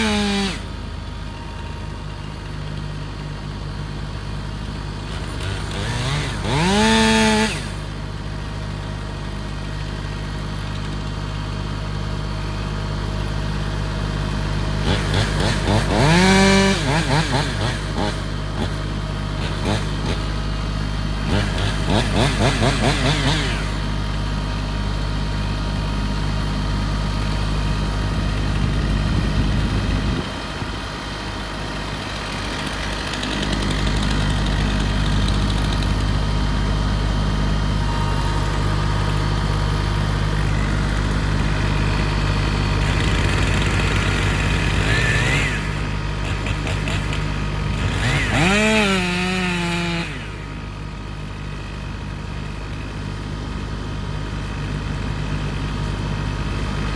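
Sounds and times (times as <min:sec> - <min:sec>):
chainsaw revving: 0:00.0 - 0:00.7, 0:04.8 - 0:11.1, 0:13.2 - 0:24.6, 0:27.2 - 0:53.0.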